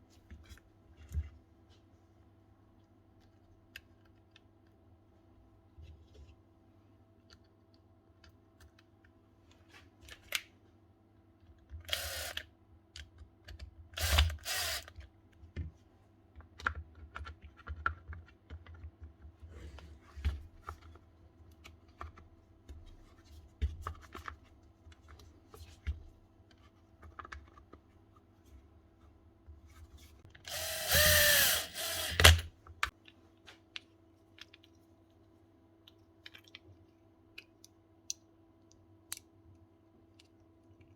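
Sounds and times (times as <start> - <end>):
power drill motor bursts: 11.9 - 12.4, 14.0 - 14.9, 30.5 - 32.5.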